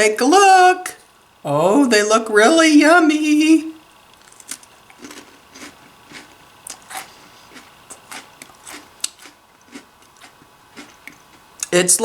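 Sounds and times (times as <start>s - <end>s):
crunchy biscuit being chewed: 4.2s - 11.5s.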